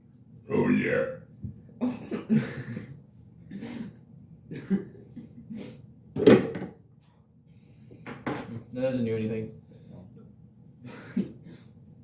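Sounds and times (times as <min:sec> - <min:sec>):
man forcing burps: 0:00.5 - 0:01.2.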